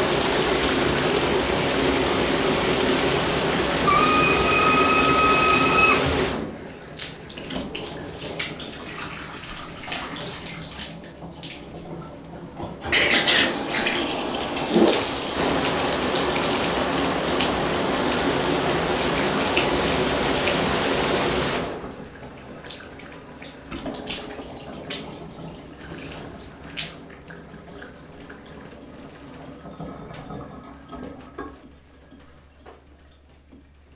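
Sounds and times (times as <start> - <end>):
shower water spraying: 0.0 - 6.6, 13.3 - 21.8
water drips and trickles: 0.0 - 12.4, 14.8 - 33.8.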